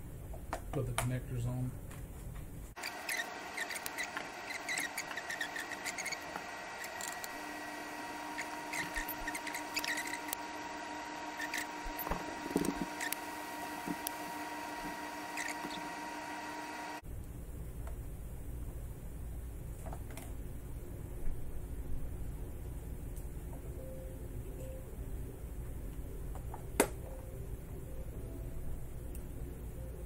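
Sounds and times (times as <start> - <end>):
small squeaky chirps: 2.8 - 7.4, 8.2 - 10.4, 11.3 - 13.2, 15.2 - 16.1
heat gun whine: 2.8 - 17.0.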